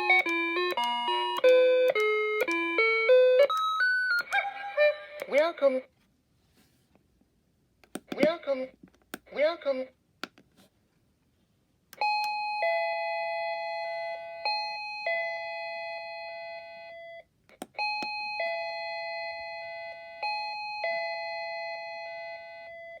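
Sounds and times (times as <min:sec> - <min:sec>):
doorbell chime melody: 0:00.0 - 0:05.0, 0:12.0 - 0:17.2, 0:17.8 - 0:23.0.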